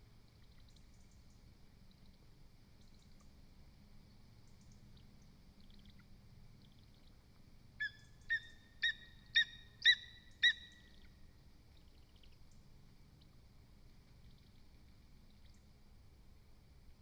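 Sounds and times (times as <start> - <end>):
faint birdsong chirps: 0.0 - 17.0
eagle calling: 7.8 - 11.1.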